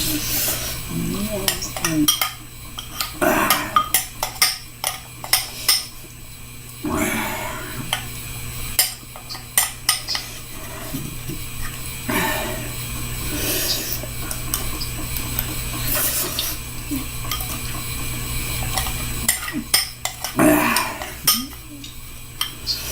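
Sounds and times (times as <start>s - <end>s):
noodle slurping: 12.0s - 21.7s.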